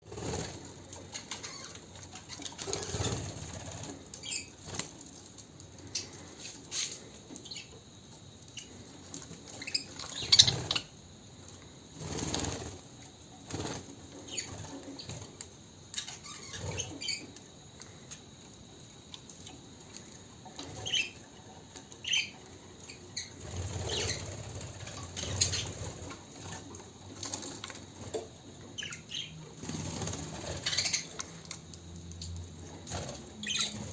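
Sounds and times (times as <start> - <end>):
birds fluttering wings: 0.0 - 7.1, 8.7 - 10.9, 11.9 - 15.5, 23.2 - 28.2, 28.8 - 31.7, 32.6 - 33.9.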